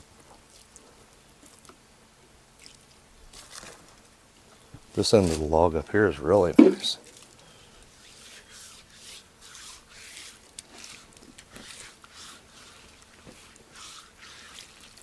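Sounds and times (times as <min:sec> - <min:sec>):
rubbing swishes: 0:07.9 - 0:15.0.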